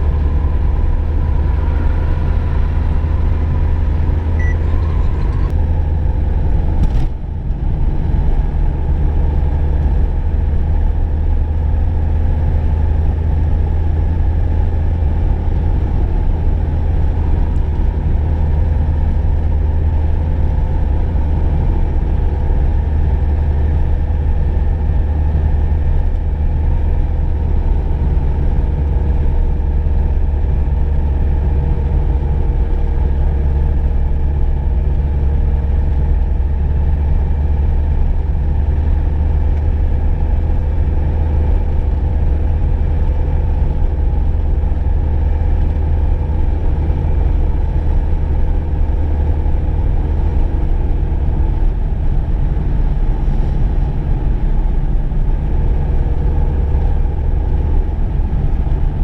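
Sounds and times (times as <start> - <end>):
car engine drone: 0.0 - 59.0
road rumble: 0.0 - 59.0.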